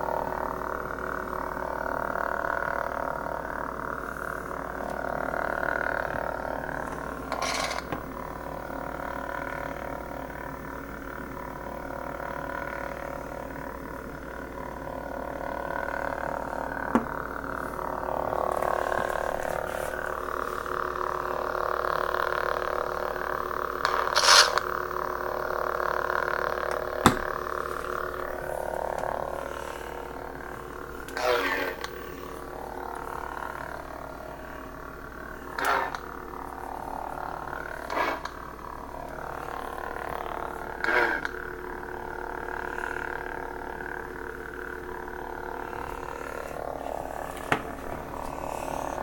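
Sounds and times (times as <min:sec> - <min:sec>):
lightsaber buzzing hum: 0:00.0 - 0:49.0
crackling lightsaber clash: 0:23.8 - 0:24.6, 0:35.5 - 0:36.1.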